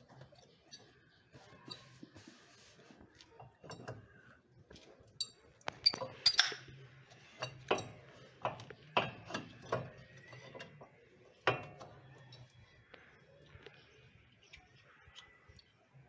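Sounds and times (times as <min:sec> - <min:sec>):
metal parts and tools clinking: 0:05.1 - 0:06.8.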